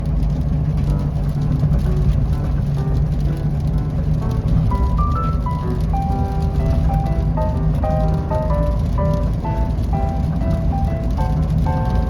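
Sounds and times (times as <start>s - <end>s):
steady low rumble: 0.0s - 12.0s
short melodic notes: 4.3s - 12.0s.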